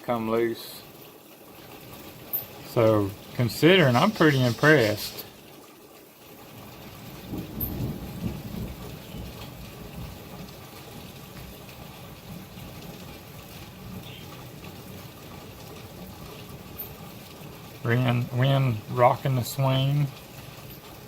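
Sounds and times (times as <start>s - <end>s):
heavy rain falling: 0.0s - 21.0s
gusting storm wind: 7.1s - 10.4s.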